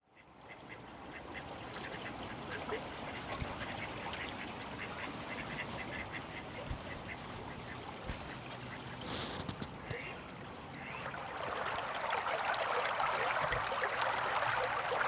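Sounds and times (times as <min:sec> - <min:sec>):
water rushing under bridge: 0:00.2 - 0:15.0
ducks quacking: 0:00.5 - 0:12.0.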